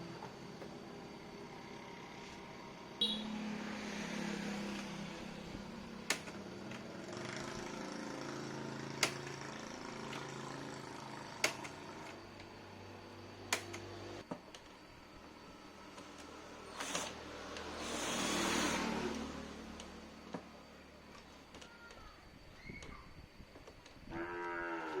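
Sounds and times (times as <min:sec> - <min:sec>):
fan motor hum: 0:00.0 - 0:24.2
fan switch clicking: 0:06.0 - 0:06.4, 0:09.0 - 0:09.3, 0:13.5 - 0:13.8.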